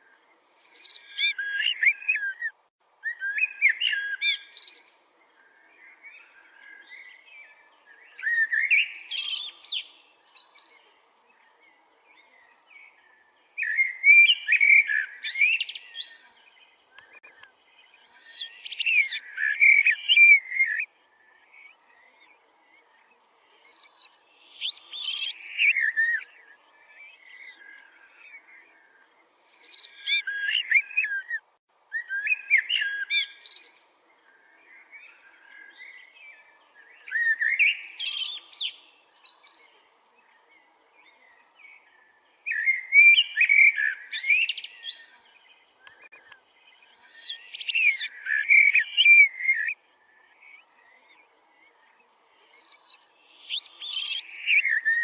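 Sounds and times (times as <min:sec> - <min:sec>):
soft bird chirps: 0:00.0 - 0:55.0
bird singing whistled phrases: 0:00.6 - 0:05.0, 0:08.1 - 0:10.9, 0:13.6 - 0:16.4, 0:18.0 - 0:20.9, 0:23.6 - 0:26.4, 0:29.5 - 0:33.8, 0:37.0 - 0:39.8, 0:42.4 - 0:46.0, 0:46.9 - 0:51.0, 0:52.4 - 0:55.0.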